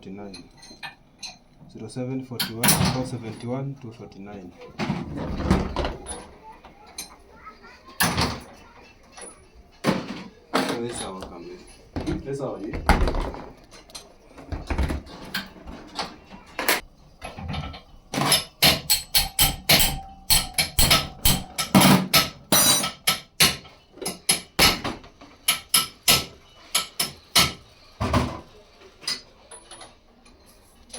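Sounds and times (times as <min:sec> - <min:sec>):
sharp knocks and clicks: 0:16.6 - 0:28.4.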